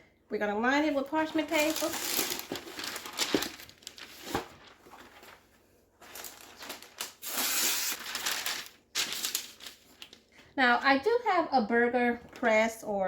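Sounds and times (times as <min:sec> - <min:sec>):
parchment paper crinkling: 0:00.8 - 0:10.5.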